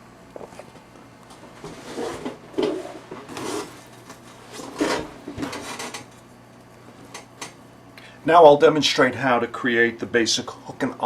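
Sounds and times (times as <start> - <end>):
handling rustles and rubs: 0.3 - 7.1.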